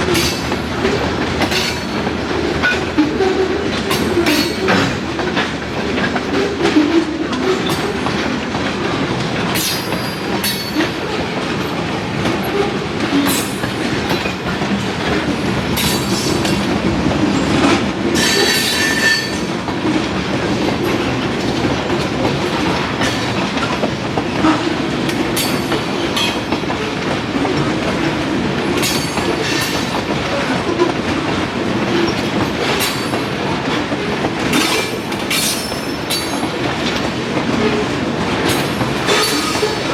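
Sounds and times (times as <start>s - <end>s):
train wheels clicking over rail joints: 0.0s - 39.9s
wheel squeal: 18.2s - 19.5s, 38.5s - 39.9s.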